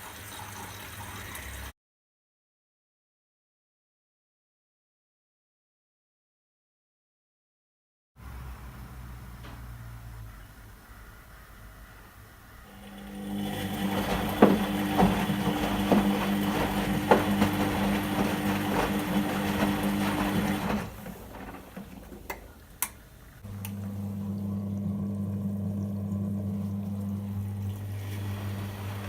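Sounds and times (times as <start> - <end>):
swishing water: 12.7 - 29.0
washing machine drum motor: 12.7 - 29.0.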